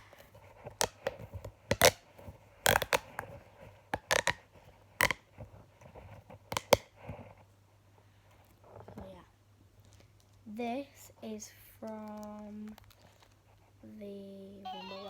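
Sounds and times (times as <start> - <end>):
plastic pop tube clicks and pops: 0.7 - 2.0, 2.6 - 3.3, 4.0 - 4.4, 5.0 - 5.2, 6.5 - 6.9
plastic creaking: 2.6 - 3.4.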